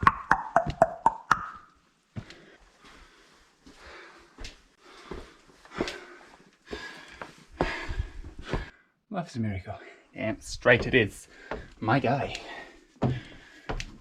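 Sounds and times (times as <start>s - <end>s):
soft breathing: 2.2s - 9.0s, 11.2s - 14.0s
footsteps on rocky track: 10.6s - 14.0s.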